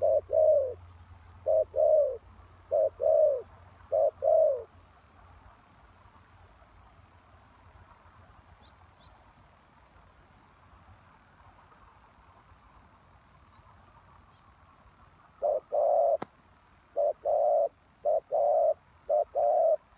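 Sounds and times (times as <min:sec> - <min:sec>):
dove cooing: 0:00.0 - 0:04.7, 0:15.4 - 0:16.3, 0:16.9 - 0:19.9
faint hiss: 0:00.0 - 0:19.9.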